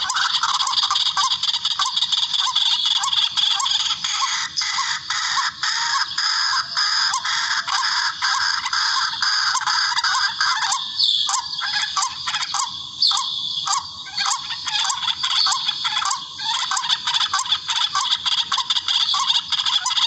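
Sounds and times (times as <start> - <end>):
rails calling rapidly: 0.0 - 4.1.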